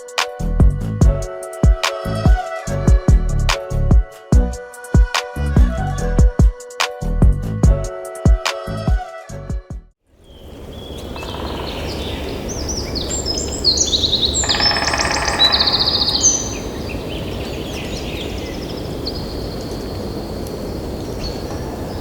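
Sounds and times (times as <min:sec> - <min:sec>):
birds chirping and trilling: 0:10.2 - 0:22.0
low background rush: 0:10.4 - 0:22.0.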